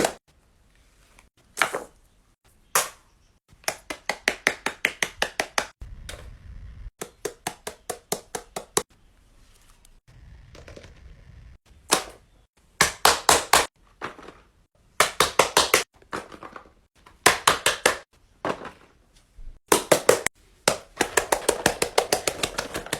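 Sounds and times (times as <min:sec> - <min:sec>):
rapid taps on small hard objects: 0:03.6 - 0:05.8, 0:19.7 - 0:22.9.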